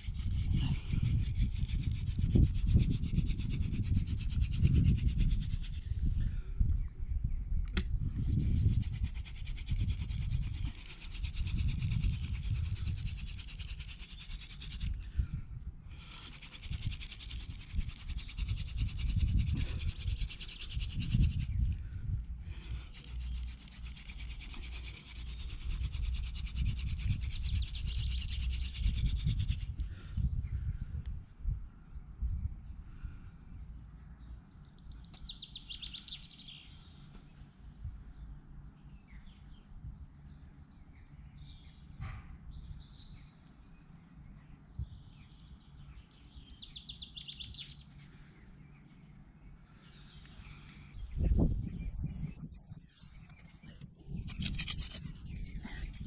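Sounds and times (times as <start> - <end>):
wooden hand drill grinding: 0.0 - 5.8, 8.3 - 15.0, 16.0 - 21.7, 22.6 - 29.7, 53.2 - 56.0
bird chirping: 22.7 - 29.5, 31.8 - 56.0.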